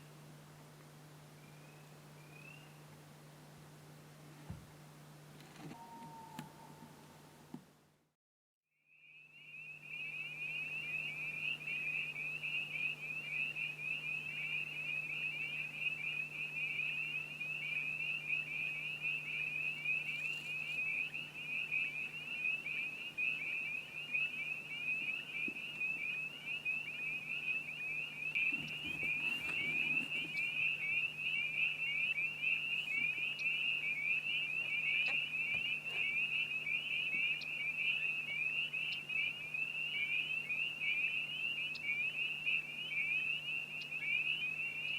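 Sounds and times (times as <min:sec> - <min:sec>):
steady low hum: 0:00.0 - 0:08.1, 0:09.1 - 0:44.9
frogs calling: 0:08.9 - 0:44.9.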